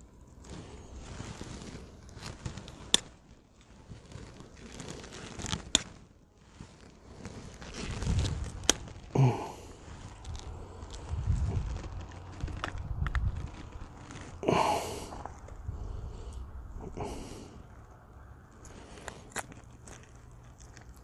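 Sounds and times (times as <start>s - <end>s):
close rustling and handling noise: 0.0s - 21.0s.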